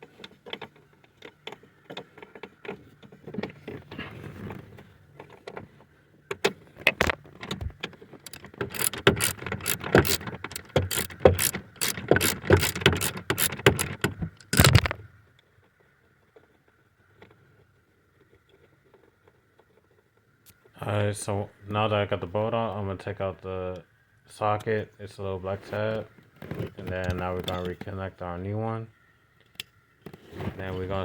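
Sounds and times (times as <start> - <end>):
handling rattles: 0.0 - 15.1
ratchet wrench clicking: 8.2 - 14.9.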